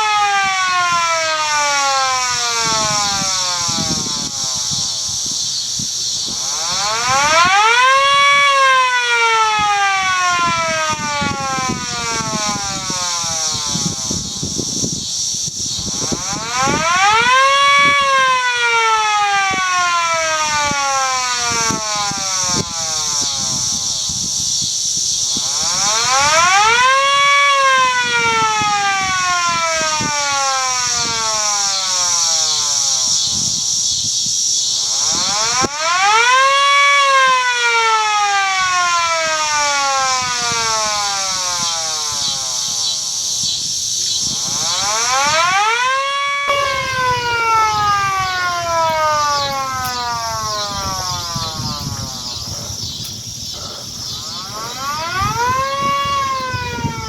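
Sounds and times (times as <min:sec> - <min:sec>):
warning siren wailing: 0:00.0 - 0:57.0.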